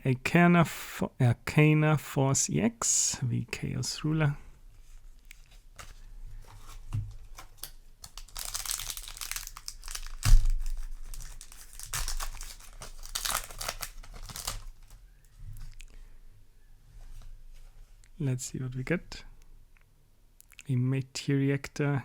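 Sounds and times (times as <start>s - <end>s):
foil wrapper crinkling and tearing: 5.8s - 15.0s.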